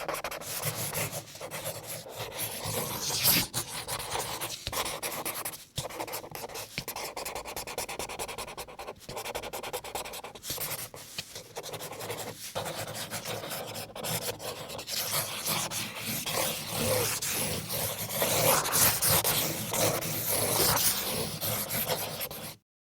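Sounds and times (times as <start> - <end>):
marker drawing on paper: 0.0 - 22.6.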